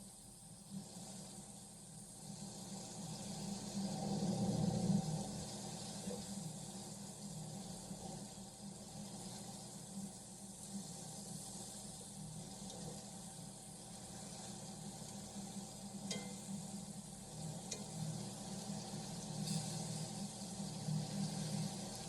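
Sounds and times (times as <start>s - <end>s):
bones sizzling in a frying pan: 13.7s - 22.0s.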